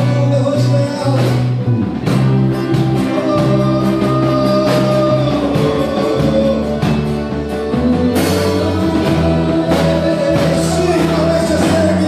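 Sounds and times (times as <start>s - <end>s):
church worship music: 0.0s - 12.0s.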